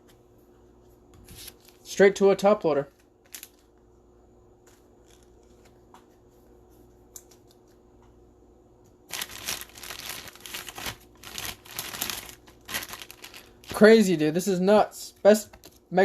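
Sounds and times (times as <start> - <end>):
foil wrapper crinkling and tearing: 3.2 - 3.7, 9.1 - 14.2.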